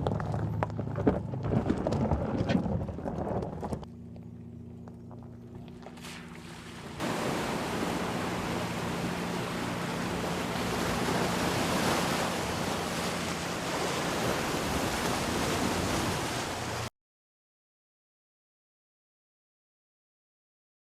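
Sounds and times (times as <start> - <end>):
loud steady rushing noise: 7.0 - 16.9.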